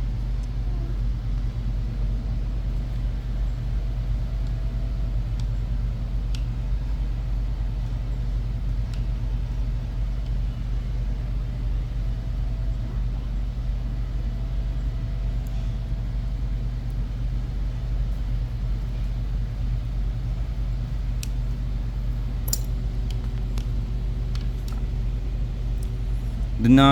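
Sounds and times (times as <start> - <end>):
faint light clicks: 6.3 - 6.5, 22.5 - 25.0.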